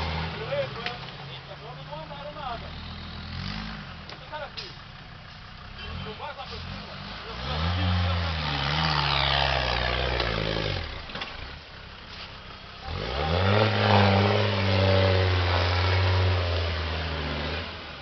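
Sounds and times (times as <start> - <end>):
engine revving under load: 0.0 - 1.3, 2.2 - 4.8, 5.7 - 11.6, 12.8 - 18.0.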